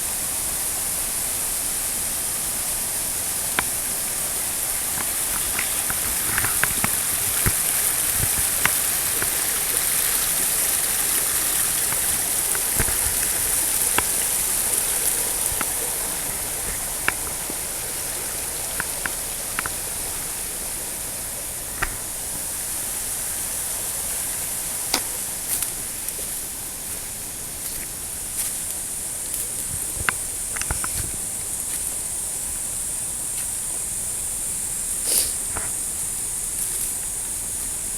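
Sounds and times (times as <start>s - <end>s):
waterfall rushing: 0.0s - 27.2s.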